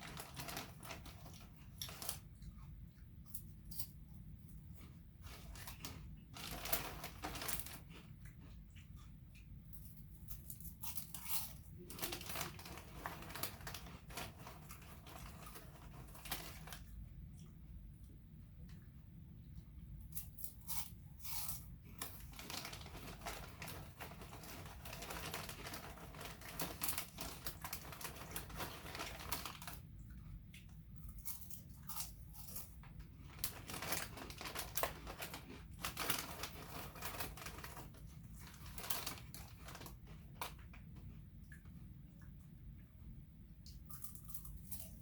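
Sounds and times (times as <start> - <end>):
chips being chewed: 4.7 - 16.9, 20.0 - 29.8, 30.6 - 40.6, 43.7 - 45.0.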